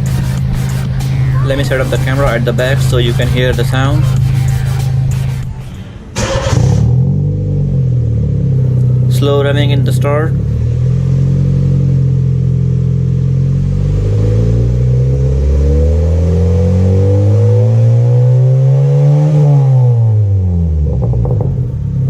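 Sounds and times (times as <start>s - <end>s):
car engine revving: 0.0s - 22.0s.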